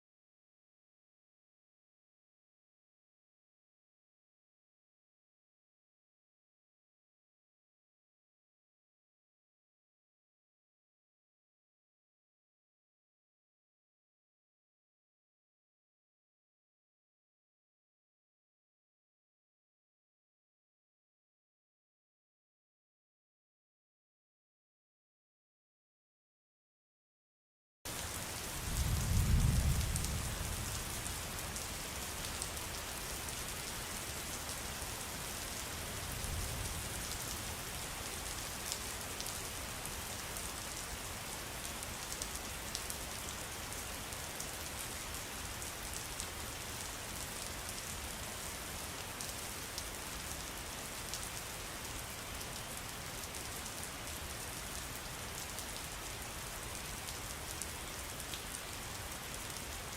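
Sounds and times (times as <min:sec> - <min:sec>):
steady rain falling: 0:27.9 - 0:59.9.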